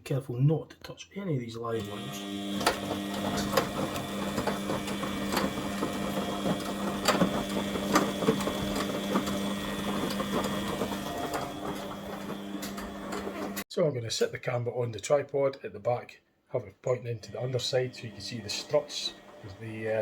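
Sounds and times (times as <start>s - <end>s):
washing machine motor humming: 1.8s - 13.6s, 17.3s - 20.0s
sharp clicks and knocks: 2.5s - 13.6s.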